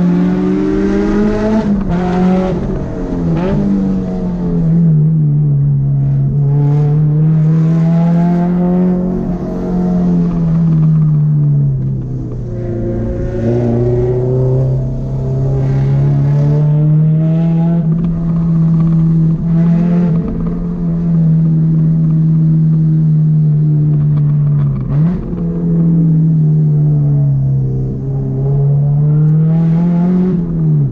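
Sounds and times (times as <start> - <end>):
car engine revving high: 0.0 - 22.8, 24.5 - 30.9.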